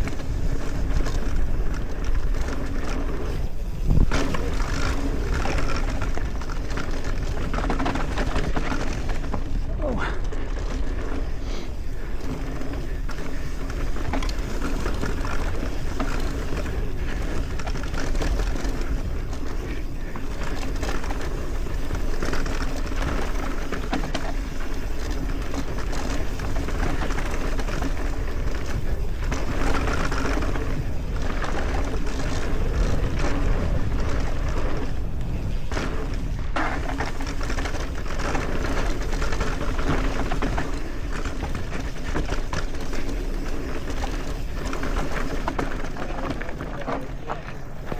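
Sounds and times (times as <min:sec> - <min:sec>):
bike rattling and knocking: 0:00.0 - 0:47.9
bike tyre noise: 0:00.0 - 0:47.9
wind rush: 0:03.3 - 0:04.7.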